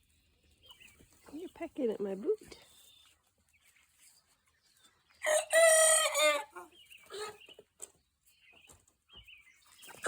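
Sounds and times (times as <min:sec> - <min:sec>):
young rooster crowing: 0:05.2 - 0:06.6.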